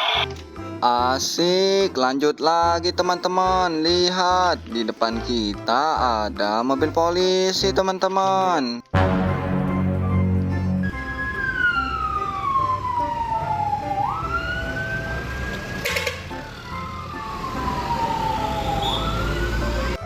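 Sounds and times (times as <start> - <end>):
police siren wailing: 9.7 - 20.0.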